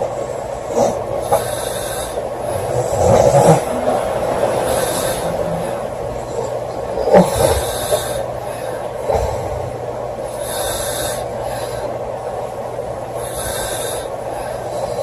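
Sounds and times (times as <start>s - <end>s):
woman snoring: 0.8s - 6.0s.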